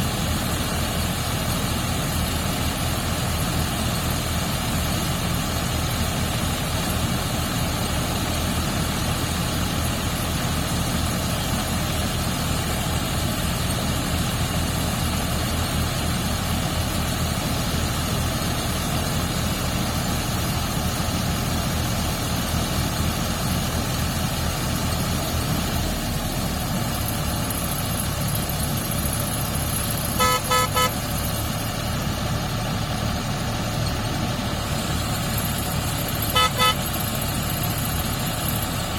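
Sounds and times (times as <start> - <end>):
harvesting machine engine running: 0.0 - 38.9
short horn toots: 30.2 - 31.0, 36.3 - 37.0.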